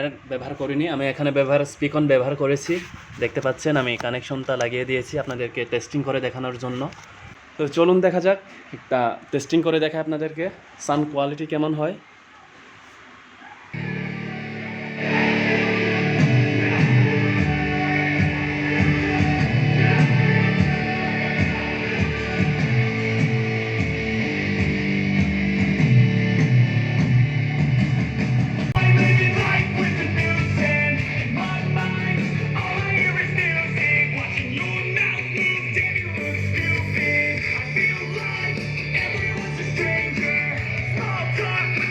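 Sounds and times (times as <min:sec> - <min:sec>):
recorded music through speaker: 0:13.7 - 0:41.9.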